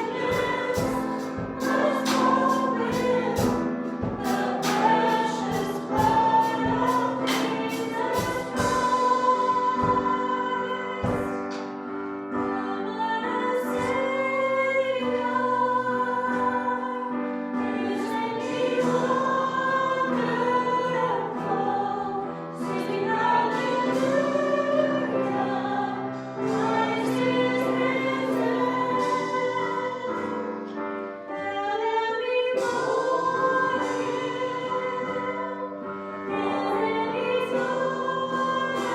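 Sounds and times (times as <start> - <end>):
percussive strikes: 0.0 - 10.3
voices singing: 0.0 - 11.7, 12.4 - 30.8, 31.4 - 38.9
worship band playing: 0.0 - 38.9.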